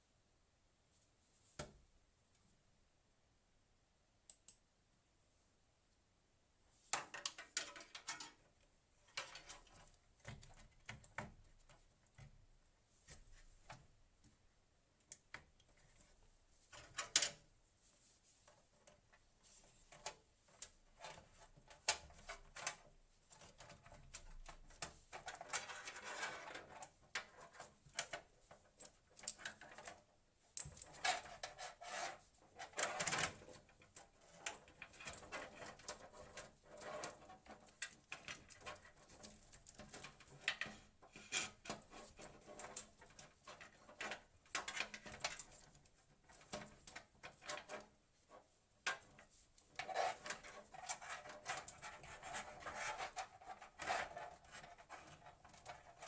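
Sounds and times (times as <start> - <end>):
small clicks and knocks: 6.9 - 14.4, 15.0 - 16.1, 16.7 - 17.4, 19.9 - 31.8, 32.6 - 47.9, 48.8 - 56.0.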